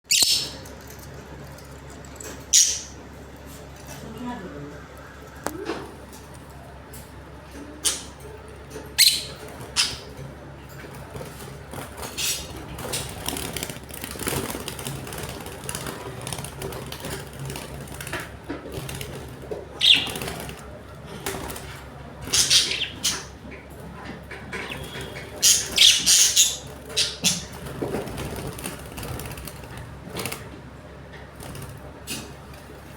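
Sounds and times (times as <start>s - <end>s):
lovebirds chirping: 0.0s - 0.6s, 2.6s - 3.0s, 9.0s - 10.1s, 19.8s - 20.4s, 22.2s - 23.4s, 24.5s - 27.6s.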